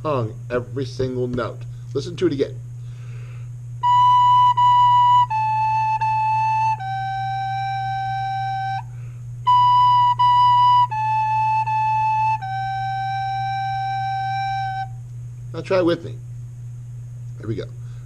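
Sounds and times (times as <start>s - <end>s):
breath between phrases: 2.8s - 3.5s
recorder playing slow phrase: 2.9s - 15.1s.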